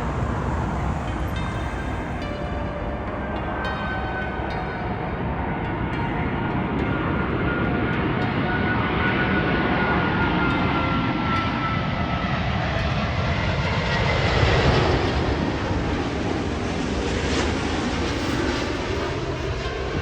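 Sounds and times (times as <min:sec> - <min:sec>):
jet engine rumble: 0:00.0 - 0:03.6
engine whine falling in pitch: 0:00.0 - 0:04.3.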